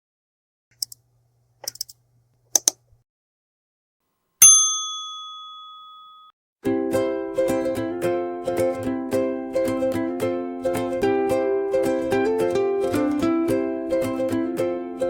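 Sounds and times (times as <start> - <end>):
faint clicks: 0.7 - 2.0
bell ding: 4.4 - 6.3
plucked-string music: 6.6 - 15.0.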